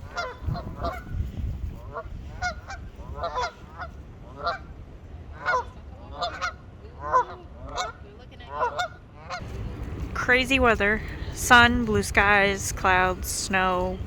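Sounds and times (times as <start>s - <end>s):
geese honking: 2.4s - 4.7s.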